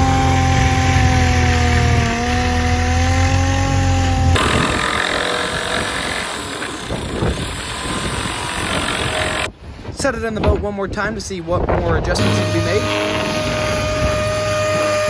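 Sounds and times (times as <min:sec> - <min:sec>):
electric sander whining on plywood: 0:00.0 - 0:09.5, 0:12.2 - 0:15.0
rough scraping noise: 0:00.4 - 0:03.5.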